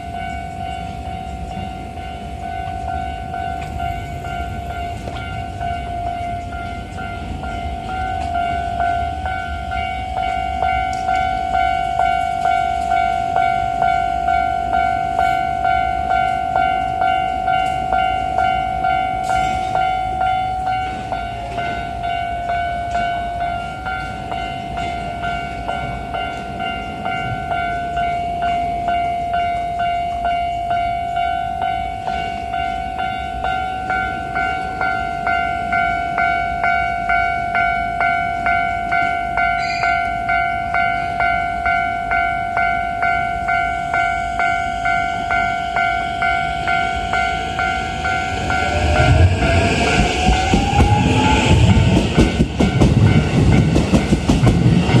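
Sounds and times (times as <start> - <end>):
level crossing bell ringing: 0.0 - 50.1
train rumbling: 0.0 - 55.0
train wheel clicks: 45.2 - 55.0.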